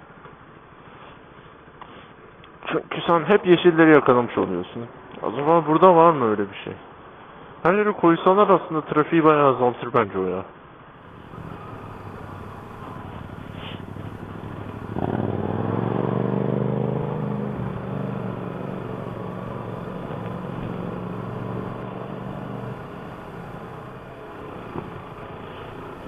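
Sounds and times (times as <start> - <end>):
motorcycle engine pulling away: 11.0 - 26.0
riding noise: 11.0 - 26.0.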